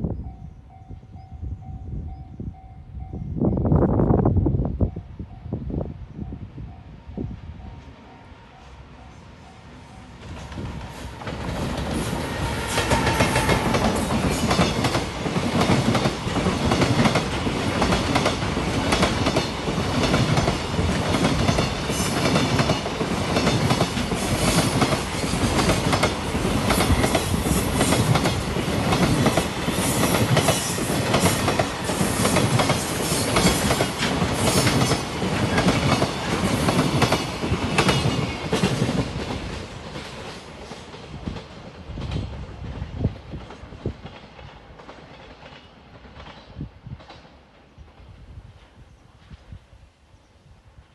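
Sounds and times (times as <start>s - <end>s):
freight train wheels clattering: 10.1s - 47.7s.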